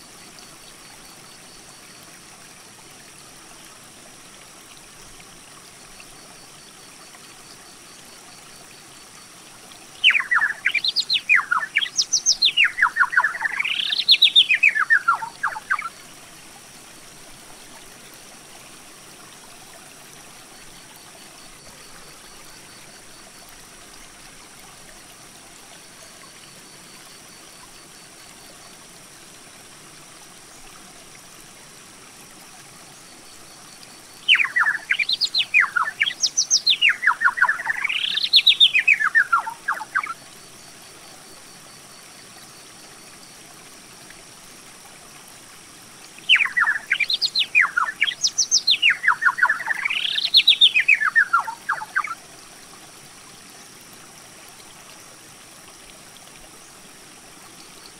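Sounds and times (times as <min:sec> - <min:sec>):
faint steady hiss: 0:00.0 - 0:57.9
songbird trilled song: 0:10.0 - 0:15.9, 0:34.2 - 0:40.2, 0:46.2 - 0:52.2.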